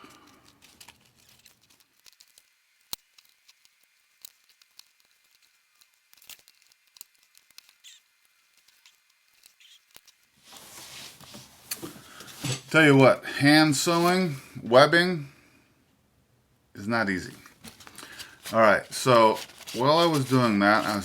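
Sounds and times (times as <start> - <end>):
needle and thread stitching strap: 17.5 - 21.0.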